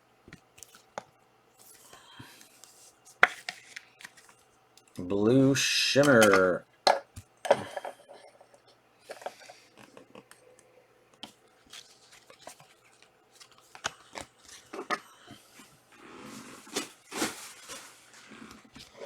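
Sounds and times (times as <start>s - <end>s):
trading card wrappers crinkling: 2.6s - 5.1s, 11.2s - 14.9s.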